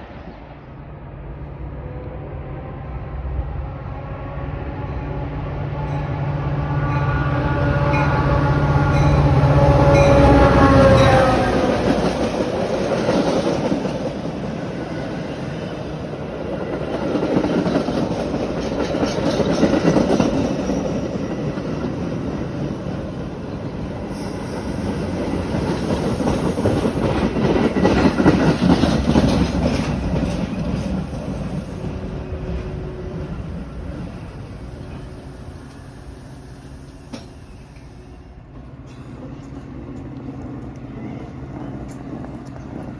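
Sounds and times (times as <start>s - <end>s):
train wheels clacking over rails: 8.9s - 38.0s.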